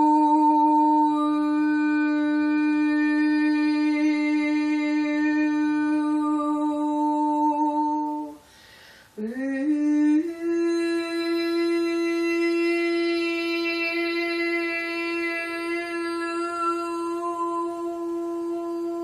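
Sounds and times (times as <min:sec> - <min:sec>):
woman singing long note: 0:00.0 - 0:08.4, 0:09.2 - 0:19.0
woman breathing in: 0:08.4 - 0:09.2.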